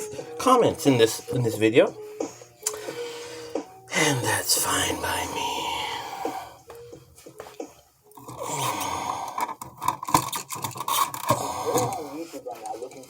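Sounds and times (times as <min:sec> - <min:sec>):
clicks taps and scraping: 0:09.3 - 0:12.0.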